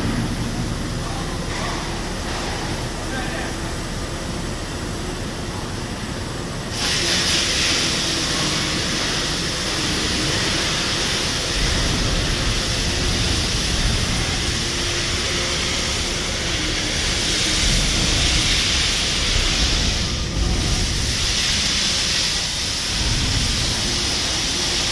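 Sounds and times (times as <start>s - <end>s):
low rumble of shop machinery: 0.0s - 24.9s
arc welding frying hiss: 6.7s - 24.9s.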